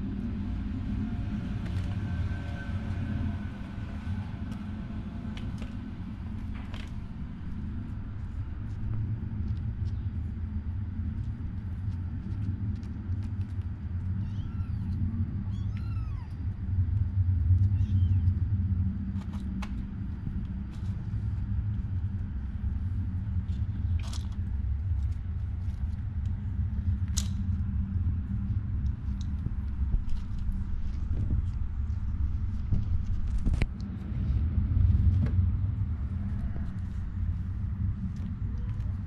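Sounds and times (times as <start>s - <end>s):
steady low rumble: 0.0s - 39.0s
kittens mewing: 14.2s - 16.4s, 17.7s - 18.3s.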